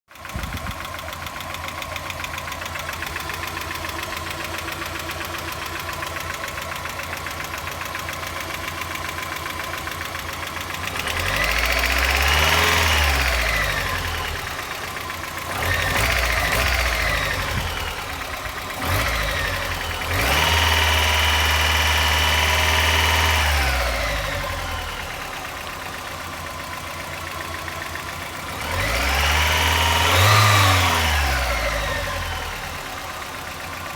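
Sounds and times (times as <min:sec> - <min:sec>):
car engine idling with ticking: 0:00.1 - 0:33.9
car engine revving: 0:00.6 - 0:33.8.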